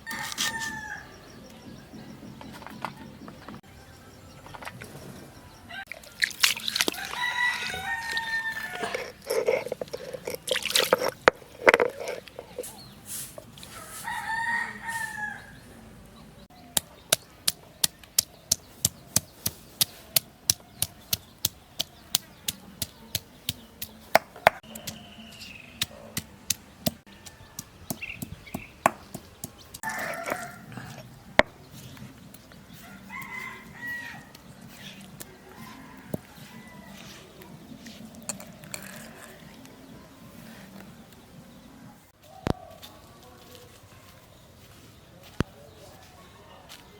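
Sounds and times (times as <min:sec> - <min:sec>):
rooster crowing: 0:00.0 - 0:01.2, 0:06.9 - 0:09.2, 0:13.7 - 0:15.5, 0:29.8 - 0:31.0, 0:32.8 - 0:34.3.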